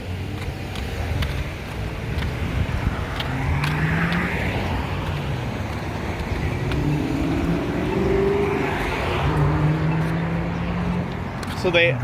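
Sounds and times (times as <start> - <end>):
crosswalk locator tone ticking: 0.0 - 12.0
road traffic: 0.0 - 12.0
car passing close: 0.1 - 12.0.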